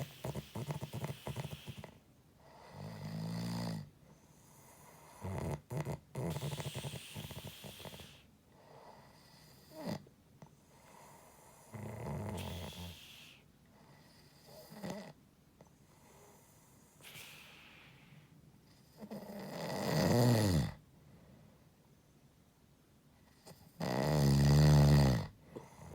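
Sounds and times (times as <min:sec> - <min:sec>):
pig-like snoring: 0:00.0 - 0:02.0, 0:05.0 - 0:08.2, 0:11.7 - 0:13.4, 0:19.0 - 0:20.8, 0:23.8 - 0:25.9
short snorts: 0:00.0 - 0:02.0, 0:05.3 - 0:08.3, 0:12.2 - 0:13.4, 0:17.0 - 0:18.3.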